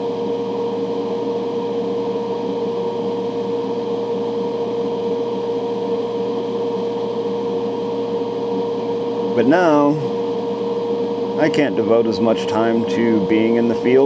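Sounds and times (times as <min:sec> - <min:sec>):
extraction fan whooshing: 0:09.3 - 0:10.3.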